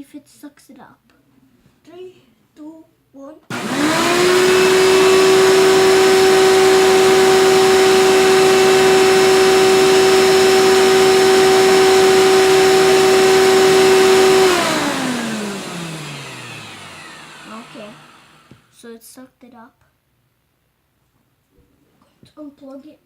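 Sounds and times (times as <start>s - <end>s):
motor winding down: 3.5s - 18.8s
vacuum cleaner whine: 3.5s - 18.8s.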